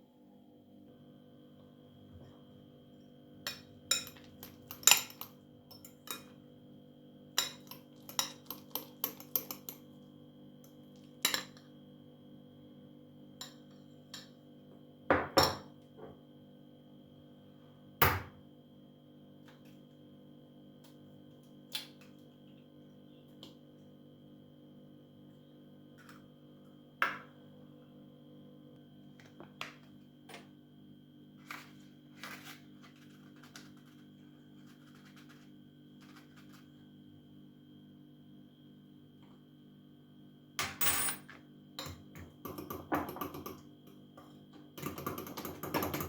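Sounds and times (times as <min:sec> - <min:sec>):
utensils and dishes clinking: 0:03.5 - 0:06.4.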